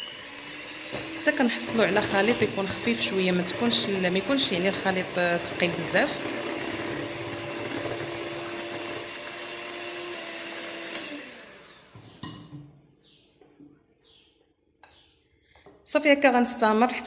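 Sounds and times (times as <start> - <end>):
electric mixer motor hum: 0.0 - 12.1.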